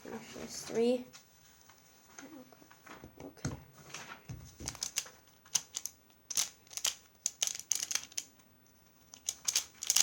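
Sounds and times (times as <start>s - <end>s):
plastic puzzle pieces clicking: 4.7s - 8.3s, 9.1s - 10.0s.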